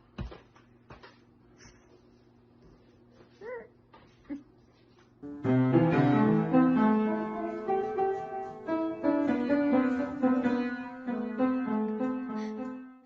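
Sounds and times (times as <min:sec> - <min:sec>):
background piano music: 0:05.2 - 0:13.0.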